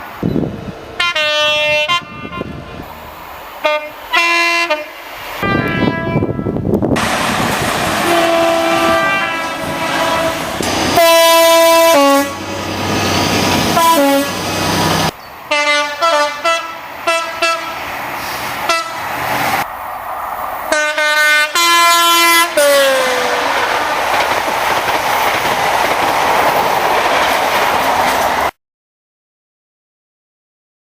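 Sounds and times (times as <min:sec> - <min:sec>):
passing train rumble: 0:00.0 - 0:28.6
train two-tone horn blasts: 0:01.0 - 0:02.9, 0:03.6 - 0:06.6, 0:07.9 - 0:12.6, 0:13.7 - 0:14.6, 0:15.5 - 0:19.0, 0:20.7 - 0:23.7
train wheel clatter: 0:23.2 - 0:28.5.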